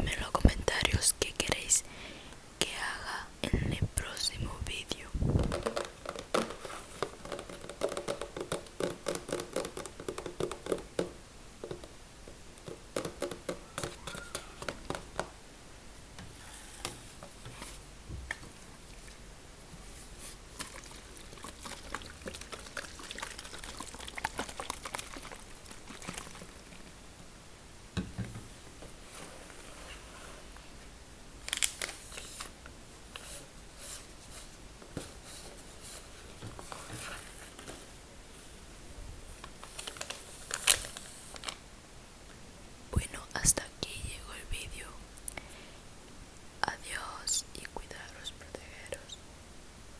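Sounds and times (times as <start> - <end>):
soft crackles and clicks: 31.4 - 33.3, 39.4 - 41.6.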